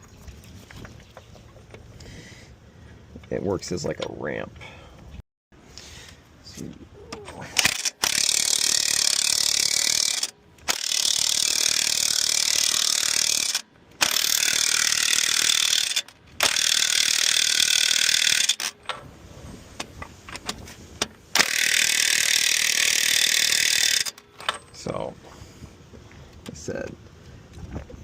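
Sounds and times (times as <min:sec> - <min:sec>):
power wrench on wheel nuts: 0:07.4 - 0:19.1, 0:19.7 - 0:24.7.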